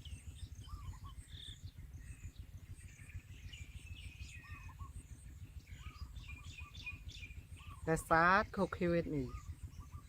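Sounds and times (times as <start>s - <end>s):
songbirds chirping: 0.0s - 10.0s
steady low rumble: 0.0s - 10.0s.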